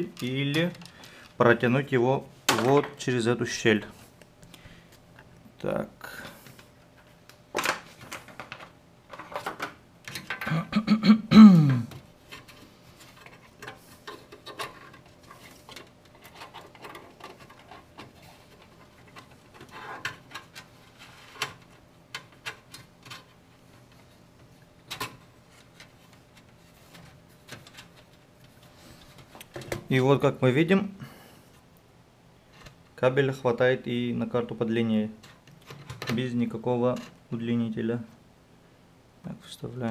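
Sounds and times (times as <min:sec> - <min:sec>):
cable clicks and rustles: 0:00.0 - 0:01.4, 0:06.2 - 0:10.5, 0:11.9 - 0:30.0.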